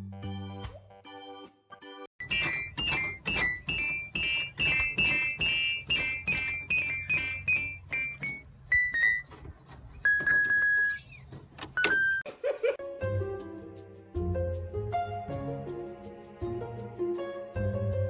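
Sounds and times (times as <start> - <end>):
held tones: 2.2 - 9.3.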